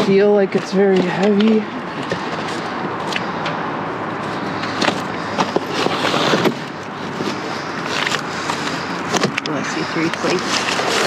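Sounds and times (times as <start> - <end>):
steady background noise: 0.0 - 11.0
items rummaged in a dumpster: 4.1 - 11.0.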